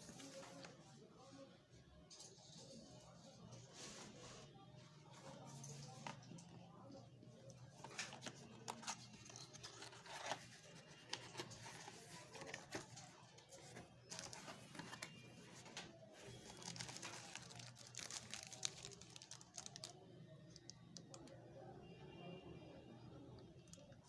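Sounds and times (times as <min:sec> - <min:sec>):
packaging crinkling and tearing: 0:07.8 - 0:20.7.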